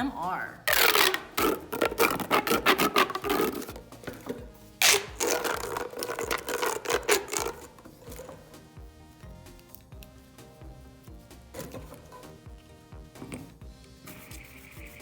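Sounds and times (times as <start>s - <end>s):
fidget toys clicking and crinkling: 4.8s - 8.3s.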